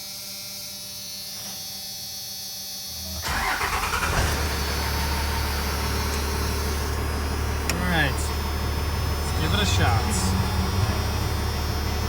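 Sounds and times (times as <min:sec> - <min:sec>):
diesel engine cranking and idling: 0:03.2 - 0:12.0.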